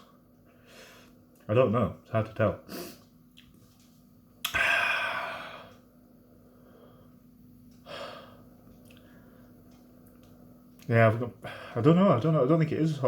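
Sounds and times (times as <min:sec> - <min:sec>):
man breathing loudly: 0:04.6 - 0:05.8, 0:07.8 - 0:09.5.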